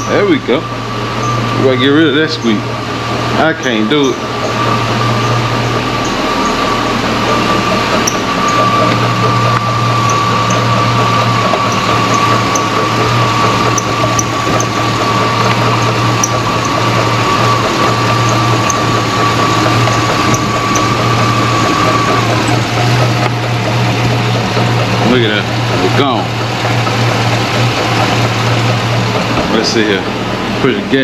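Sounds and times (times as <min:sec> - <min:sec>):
drive belt squeaking: 0:00.0 - 0:31.0
truck engine running: 0:00.0 - 0:31.0.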